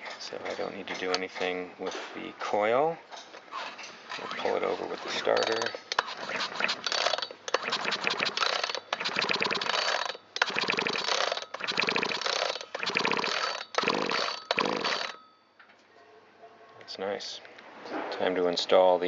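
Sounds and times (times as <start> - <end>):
recoil starter pulls clattering: 6.8 - 15.2.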